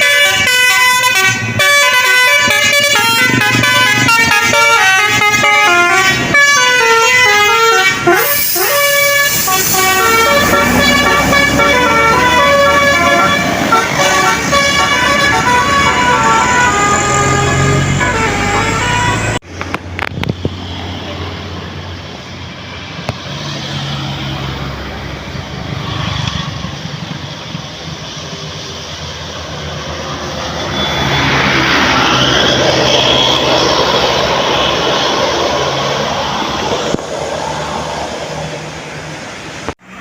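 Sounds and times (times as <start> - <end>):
musical air horn melody: 0.0 - 19.4
heavy vehicle engine hum: 0.0 - 40.0
traffic noise: 0.0 - 40.0
vehicle approaching: 0.9 - 40.0.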